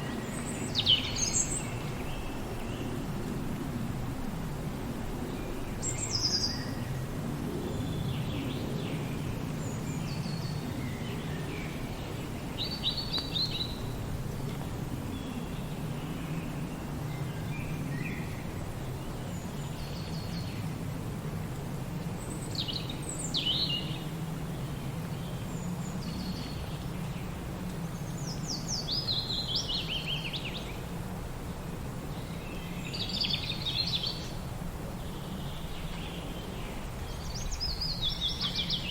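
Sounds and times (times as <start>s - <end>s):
wind through forest: 0.0s - 38.9s
birds chirping and trilling: 35.6s - 38.9s.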